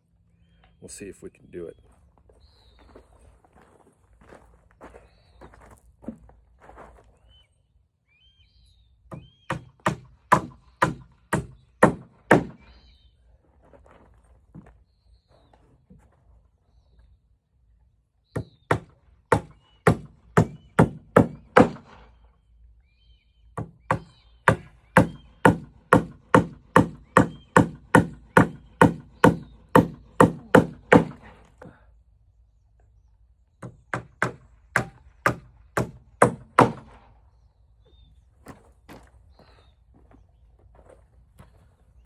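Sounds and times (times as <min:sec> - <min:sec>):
hammer driving nails into wood: 0:09.1 - 0:12.7, 0:18.4 - 0:22.0, 0:23.6 - 0:31.3, 0:33.6 - 0:37.0.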